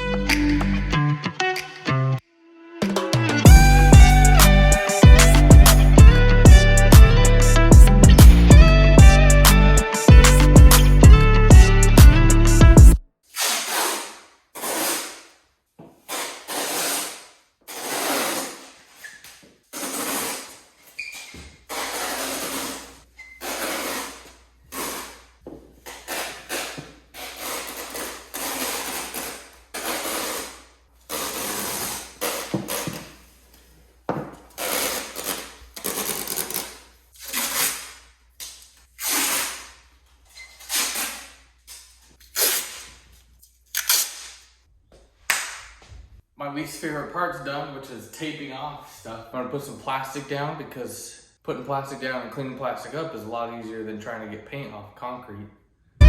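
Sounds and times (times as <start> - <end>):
masking tape ripping off roll: 13.3 - 15.4, 16.0 - 33.3, 34.4 - 44.6.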